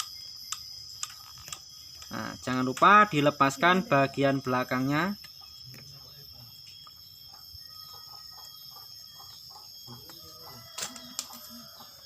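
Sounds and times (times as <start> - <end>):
sharp clicks: 0.0 - 2.9
crickets chirring: 0.0 - 12.0.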